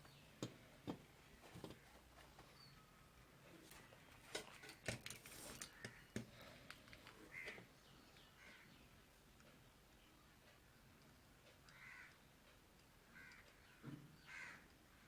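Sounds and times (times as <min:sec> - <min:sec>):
faint clicks and taps of hand tools: 0:04.3 - 0:07.7.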